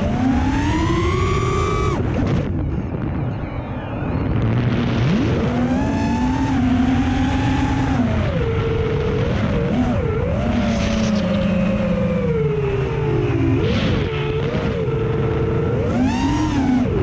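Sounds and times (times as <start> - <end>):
drone motors whining: 0.0 - 17.0.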